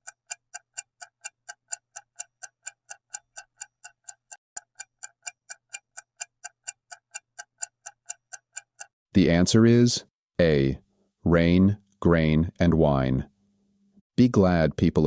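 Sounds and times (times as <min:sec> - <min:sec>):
fast clock ticking: 0:00.0 - 0:09.0.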